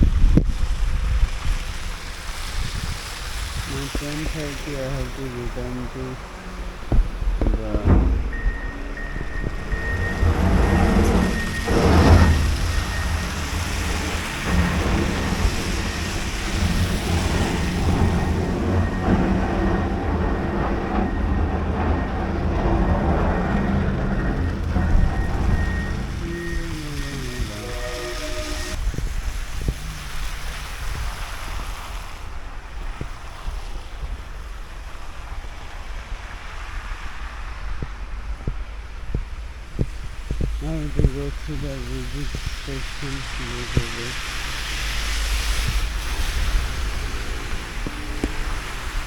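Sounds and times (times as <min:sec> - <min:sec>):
wind buffeting microphone: 0:00.0 - 0:49.0
faint knocks: 0:03.8 - 0:28.8.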